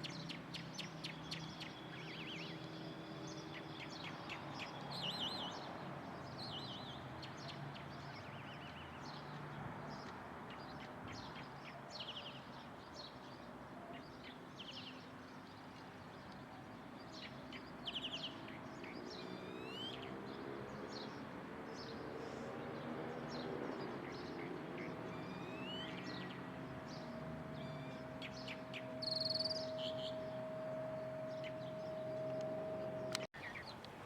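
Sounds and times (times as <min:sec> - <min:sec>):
birds chirping: 0:00.0 - 0:34.0
steady higher tone: 0:25.3 - 0:33.3.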